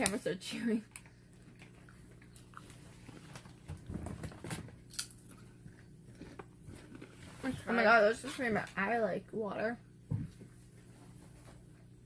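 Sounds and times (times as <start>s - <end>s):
person chewing crunchy chip: 4.8s - 7.2s.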